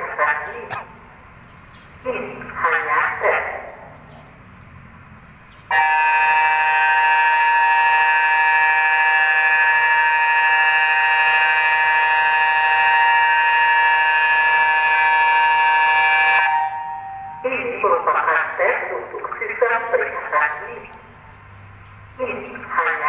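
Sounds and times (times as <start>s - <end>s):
steady warning siren tone: 5.7s - 19.1s.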